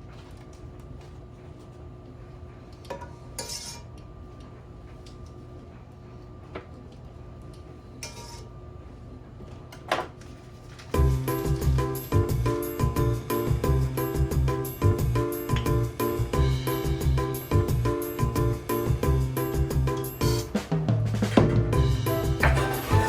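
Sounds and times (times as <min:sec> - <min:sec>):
cookware and utensils clinking: 0:22.1 - 0:23.0.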